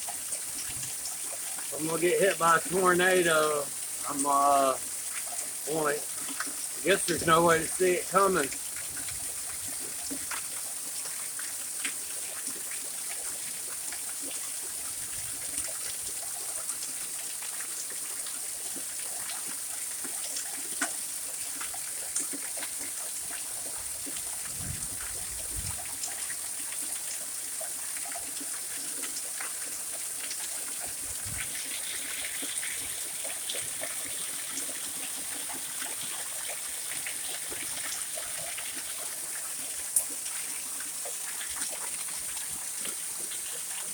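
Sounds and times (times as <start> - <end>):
heavy rain hiss: 0.0 - 9.9, 23.1 - 43.9
raindrops ticking: 1.6 - 11.1, 20.3 - 43.9.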